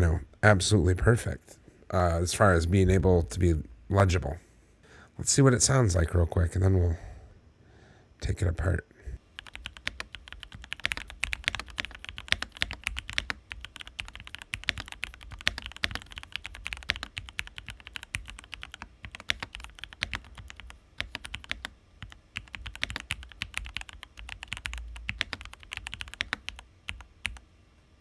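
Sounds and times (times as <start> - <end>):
fast typing on mechanical keyboard: 9.3 - 27.4.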